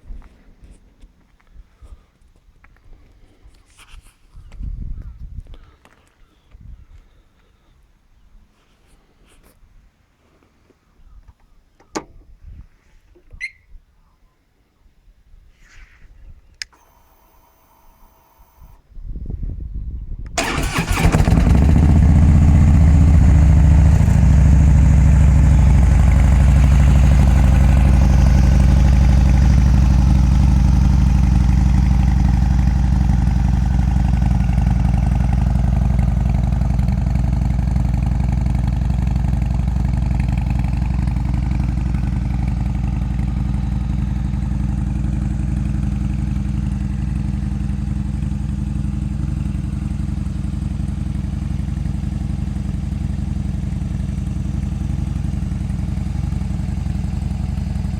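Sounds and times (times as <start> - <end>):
motorcycle engine idling: 20.4 - 57.9.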